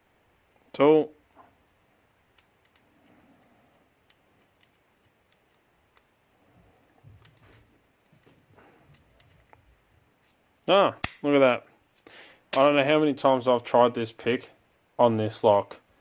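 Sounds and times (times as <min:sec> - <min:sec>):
lock pick clicking and scraping: 0:03.8 - 0:06.3.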